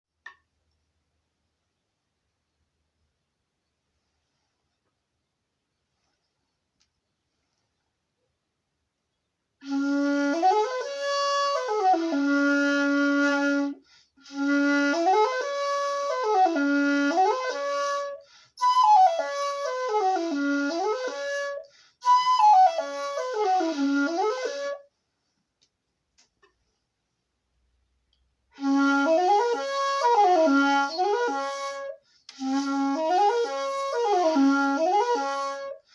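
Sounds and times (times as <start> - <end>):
bamboo flute solo: 9.6 - 24.9, 28.5 - 35.9
breaths: 13.8 - 14.2, 18.2 - 18.6, 21.6 - 22.1, 32.0 - 32.4.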